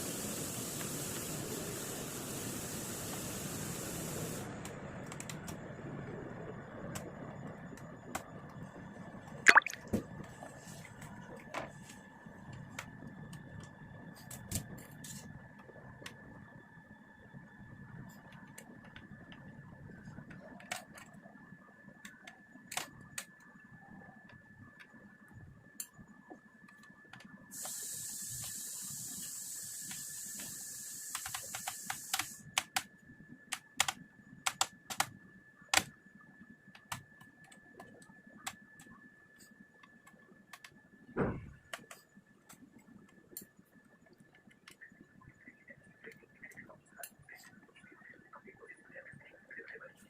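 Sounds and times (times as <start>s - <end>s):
faint high whine: 4.2s - 50.0s
even hiss: 27.5s - 32.4s.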